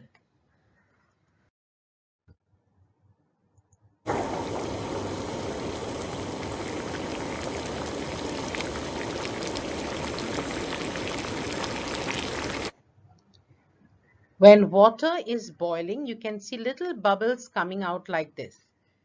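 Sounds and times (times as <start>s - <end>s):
water boiling hard: 4.1s - 12.7s.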